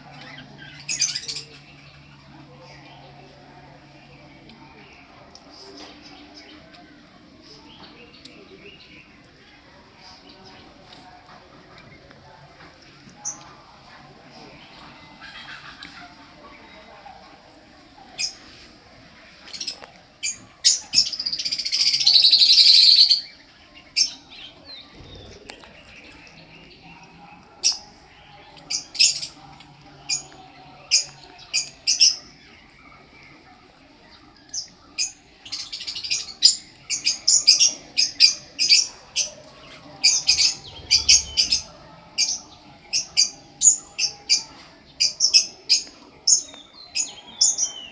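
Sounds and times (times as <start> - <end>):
guinea pig squeaking: 34.5 - 44.5.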